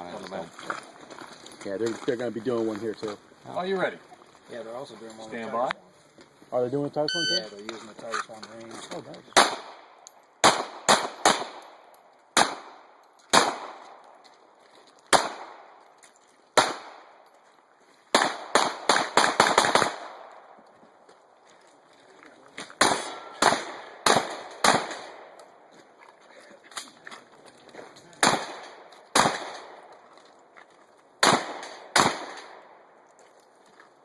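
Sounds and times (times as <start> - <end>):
pistol shots: 9.4 - 11.8, 12.4 - 14.0, 15.1 - 15.7, 16.6 - 17.1, 18.1 - 20.3, 22.8 - 25.3, 28.2 - 29.9, 31.2 - 32.8
shotgun shots: 9.4 - 11.8, 12.4 - 13.9, 15.1 - 15.7, 16.6 - 17.1, 18.1 - 20.3, 22.8 - 25.3, 28.2 - 29.9, 31.2 - 32.7.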